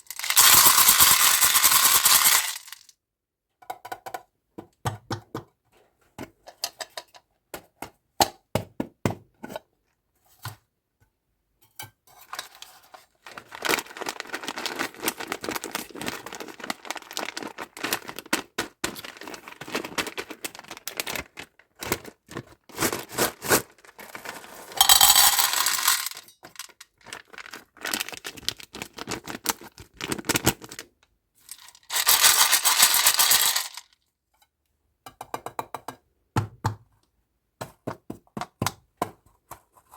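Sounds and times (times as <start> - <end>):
crinkling wrapper: 12.3 - 30.9, 31.5 - 33.9
packaging tearing and rustling: 12.4 - 24.8, 27.0 - 30.8.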